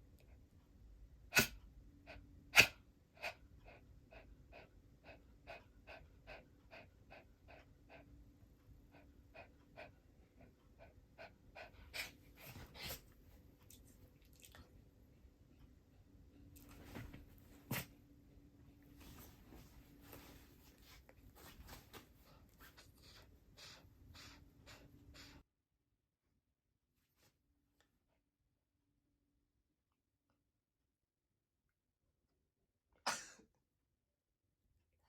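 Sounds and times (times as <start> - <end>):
dog sneezing: 1.3 - 1.6, 2.6 - 2.8, 33.1 - 33.4.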